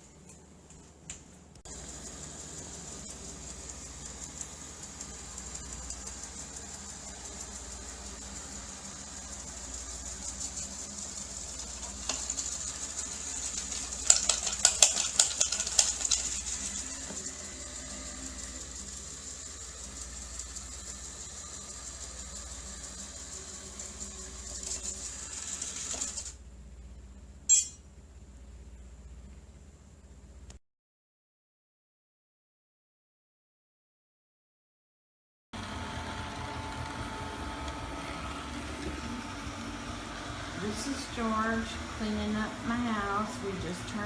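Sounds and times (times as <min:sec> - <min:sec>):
robot vacuum cleaner whining: 0:01.6 - 0:26.4, 0:35.6 - 0:44.0
rattling clicks: 0:13.3 - 0:16.7.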